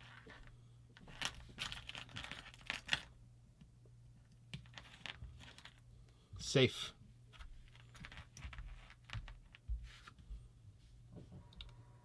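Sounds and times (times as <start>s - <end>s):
steady low hum: 9.4s - 12.0s.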